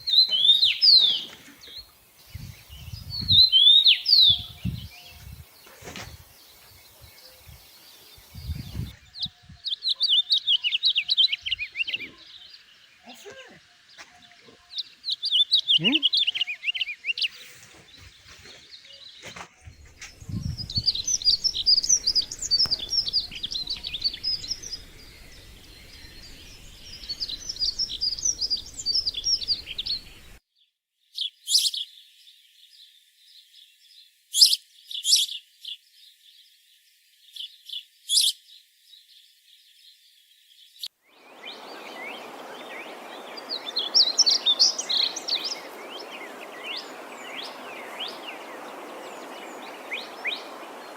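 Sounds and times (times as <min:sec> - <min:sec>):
small birds chirping: 0:00.0 - 0:50.9.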